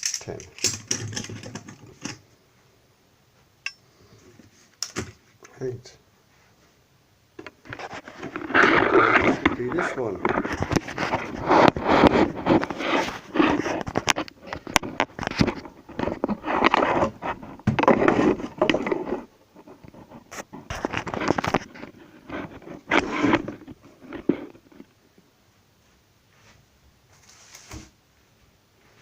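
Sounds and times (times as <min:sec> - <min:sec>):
packaging scraping and rustling: 0:07.6 - 0:24.8.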